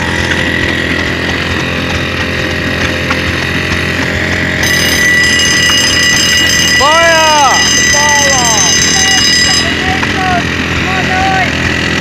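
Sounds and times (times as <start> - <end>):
higher steady tones: 3.8 - 11.6
electric fire bell ringing: 4.3 - 10.6.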